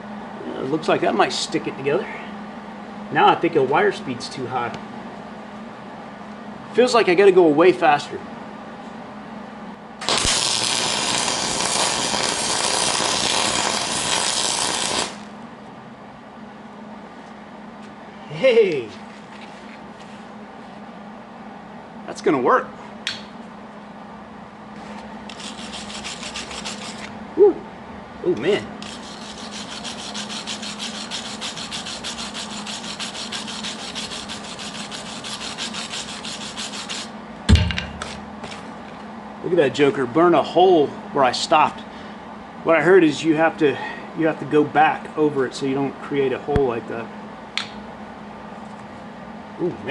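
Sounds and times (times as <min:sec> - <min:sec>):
welding arc crackle and hiss: 0:10.0 - 0:15.3
welder arc buzzing: 0:10.0 - 0:15.4, 0:25.2 - 0:27.2, 0:28.8 - 0:38.6.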